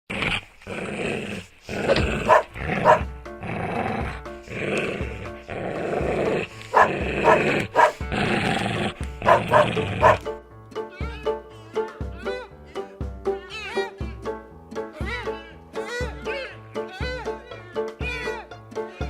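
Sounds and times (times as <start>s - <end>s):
background music: 1.8s - 19.0s
dog barking: 2.0s - 3.1s, 6.7s - 8.1s, 9.2s - 10.3s.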